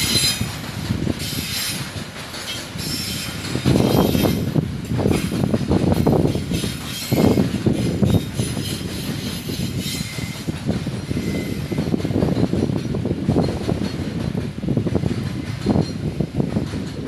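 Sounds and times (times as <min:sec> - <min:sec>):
freight train wagons clattering: 0:00.0 - 0:17.0
wheels squealing: 0:02.4 - 0:04.4, 0:06.3 - 0:11.9.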